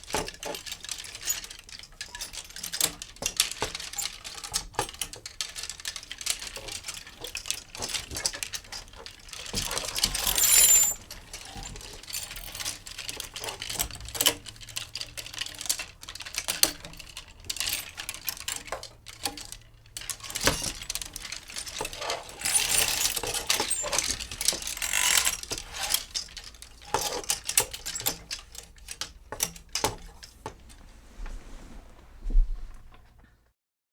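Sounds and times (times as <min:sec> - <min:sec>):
clothes hangers clicking together: 0:00.1 - 0:30.6
hangers scraping along rail: 0:09.2 - 0:29.5.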